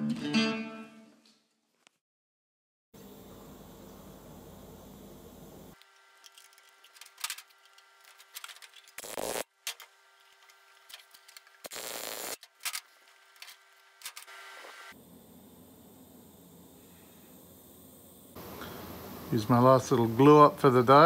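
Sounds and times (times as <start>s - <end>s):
short hissing bursts: 14.3s - 19.4s.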